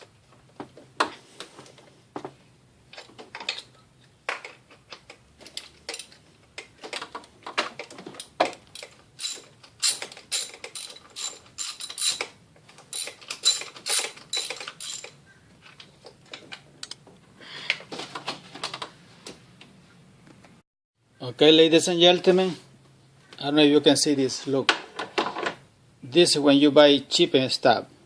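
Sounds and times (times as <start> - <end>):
ratchet wrench clicking: 8.8 - 12.3, 12.9 - 15.2.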